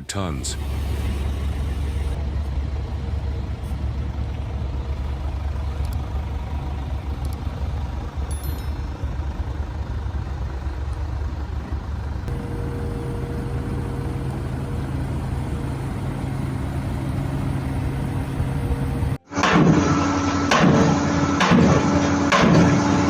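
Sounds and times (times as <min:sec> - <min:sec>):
heavy vehicle engine droning: 0:00.0 - 0:23.0
knocking mechanical noise: 0:19.4 - 0:23.0.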